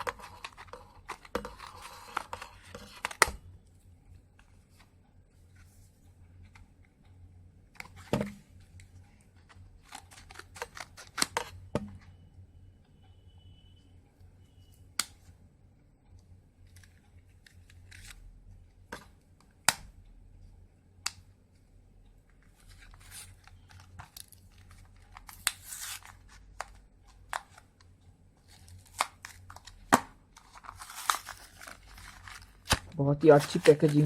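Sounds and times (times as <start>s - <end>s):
packaging tearing and rustling: 22.9s - 26.6s, 30.4s - 34.0s.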